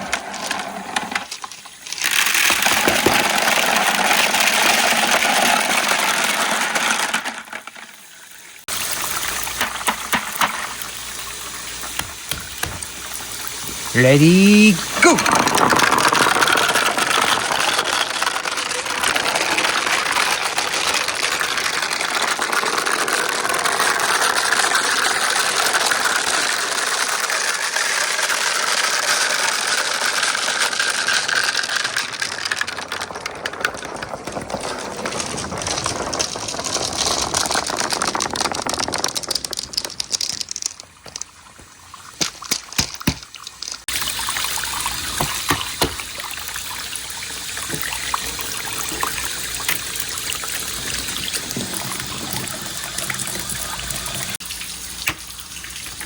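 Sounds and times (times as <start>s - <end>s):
glass marbles clattering on plastic: 0.0s - 8.1s, 8.7s - 44.4s
water flowing: 8.7s - 15.4s, 38.6s - 56.0s.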